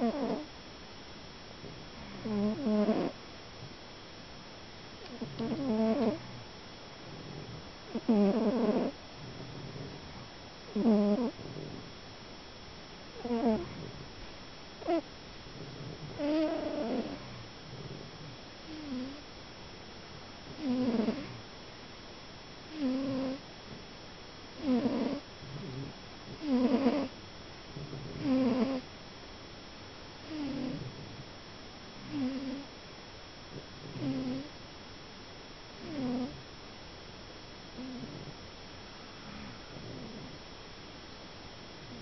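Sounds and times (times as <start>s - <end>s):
cat snoring: 0.0s - 0.5s, 1.6s - 3.2s, 5.0s - 6.4s, 7.0s - 11.9s, 13.2s - 14.2s, 14.8s - 19.3s, 20.5s - 21.4s, 22.7s - 23.4s, 24.6s - 27.1s, 27.8s - 28.9s, 30.2s - 31.2s, 32.0s - 32.7s, 33.5s - 34.5s, 35.8s - 36.5s, 37.8s - 38.4s, 39.0s - 40.4s.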